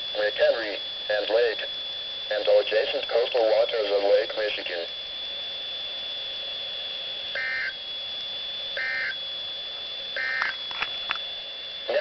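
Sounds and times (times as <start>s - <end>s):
warbling data bursts: 0.0s - 4.9s, 7.2s - 7.8s, 8.7s - 9.3s, 10.1s - 11.2s
radio whine and hiss: 0.0s - 12.0s.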